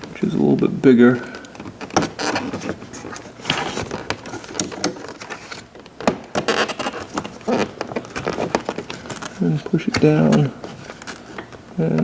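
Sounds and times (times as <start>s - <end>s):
plastic clicks and rustling: 0.0s - 12.0s.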